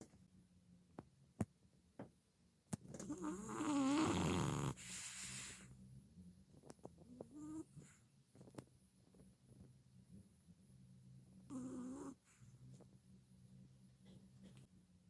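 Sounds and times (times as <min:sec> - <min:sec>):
puppy snoring: 0:03.0 - 0:05.8, 0:07.0 - 0:08.5, 0:11.4 - 0:12.6.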